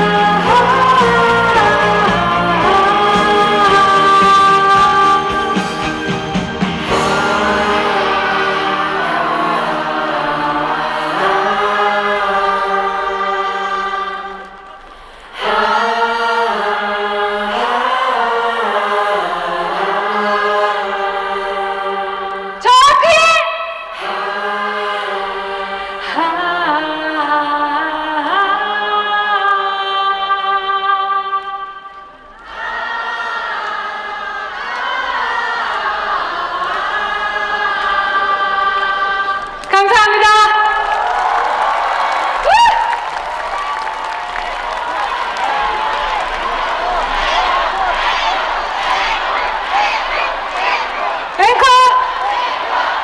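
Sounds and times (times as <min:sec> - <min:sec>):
person singing: 0:00.0 - 0:14.6.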